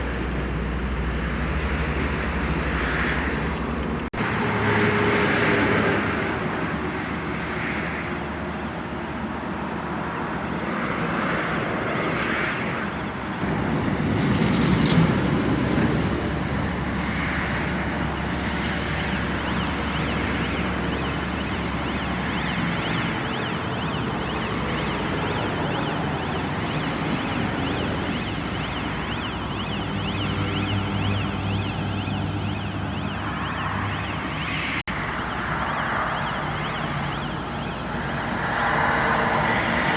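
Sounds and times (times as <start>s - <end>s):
warbling warning alarm: 17.5s - 39.9s.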